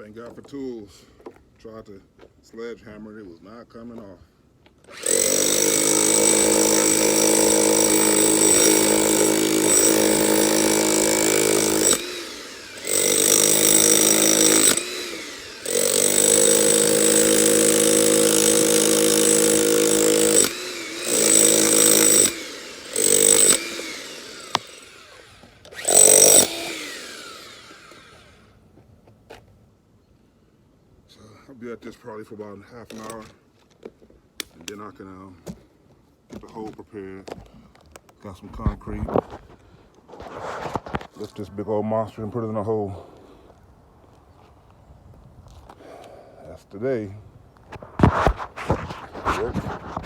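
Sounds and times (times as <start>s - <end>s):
jackhammer hammering: 4.9s - 28.2s.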